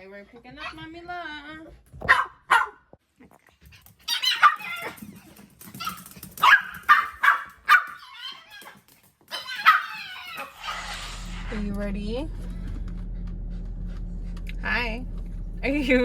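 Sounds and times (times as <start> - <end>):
dog barking: 2.0 - 2.9, 4.1 - 5.0, 5.8 - 10.8.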